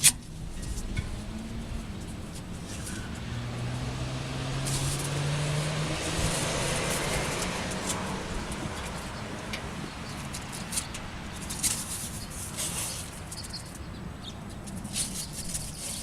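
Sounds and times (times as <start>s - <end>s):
vehicle driving past: 0.8s - 10.3s.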